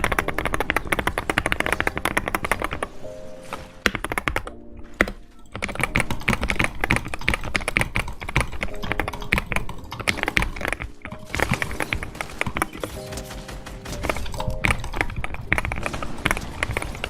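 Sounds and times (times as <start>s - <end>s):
fast typing on keyboard: 0.0s - 3.1s, 3.8s - 17.0s.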